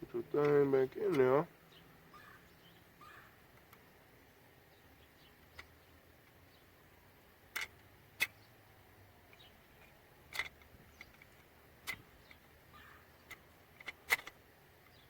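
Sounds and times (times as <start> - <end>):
small plastic parts clicking: 7.5 - 8.4, 9.3 - 12.4, 13.2 - 15.0.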